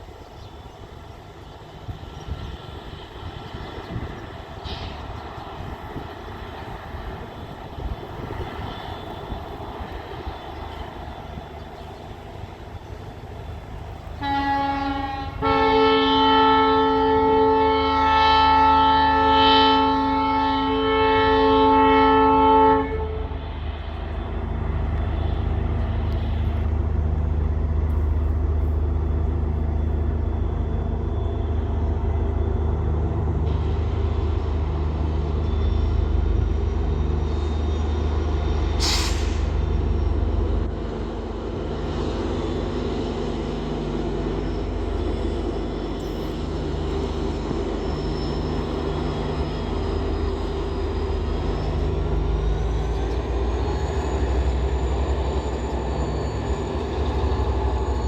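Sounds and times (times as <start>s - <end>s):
locomotive engine drone: 0.0s - 58.0s
short sharp hiss: 38.8s - 39.6s.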